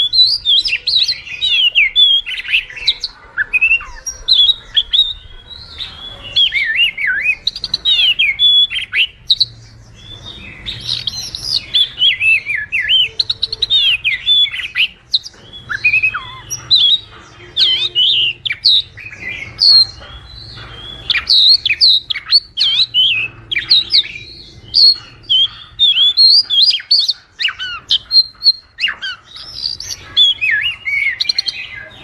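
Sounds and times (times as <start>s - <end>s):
bird singing whistled notes: 0.0s - 32.0s.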